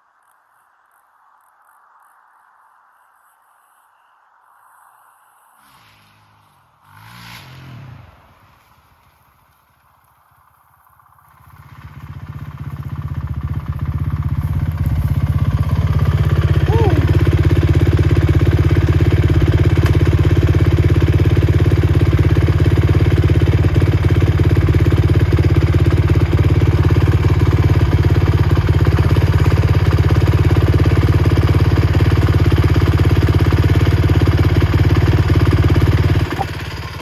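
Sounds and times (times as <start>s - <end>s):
quad engine idling: 9.0s - 37.0s.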